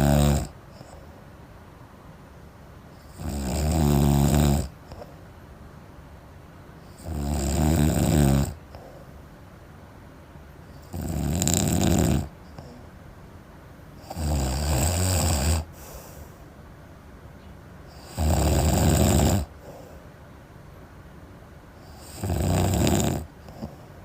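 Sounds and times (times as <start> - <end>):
person snoring heavily: 0.0 - 0.6, 3.0 - 4.8, 6.9 - 8.9, 10.8 - 12.8, 14.0 - 16.2, 17.9 - 19.9, 21.8 - 23.8
quiet breathing: 0.0 - 1.6, 4.1 - 5.4, 8.5 - 9.5, 12.2 - 13.0, 15.5 - 16.7, 19.0 - 20.3, 22.9 - 24.0.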